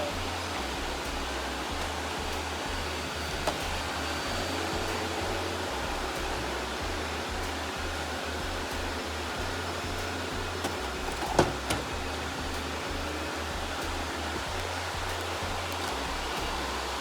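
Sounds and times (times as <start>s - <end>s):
robot vacuum motor whirring: 0.0s - 17.0s.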